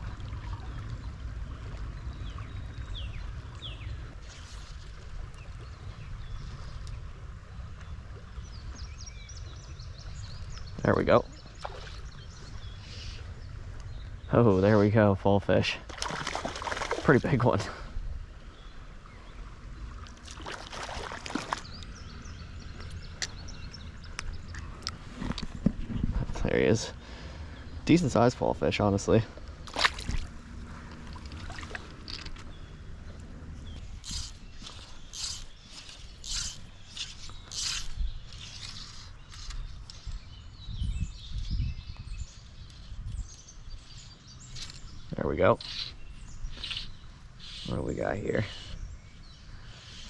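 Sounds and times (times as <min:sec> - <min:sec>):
water splashing and sloshing: 0:00.0 - 0:13.8, 0:15.8 - 0:17.9, 0:18.8 - 0:26.4, 0:28.1 - 0:40.0
small birds chirping: 0:07.7 - 0:29.5, 0:30.2 - 0:50.0
steady low rumble: 0:21.6 - 0:37.4
fly line stripping rasps: 0:33.8 - 0:39.7, 0:45.6 - 0:47.6.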